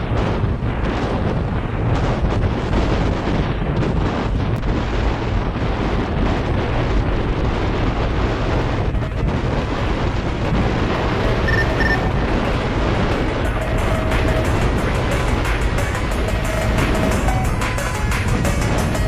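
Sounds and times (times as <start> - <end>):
wind buffeting microphone: 0.0 - 19.0
short high beeps: 11.5 - 12.2.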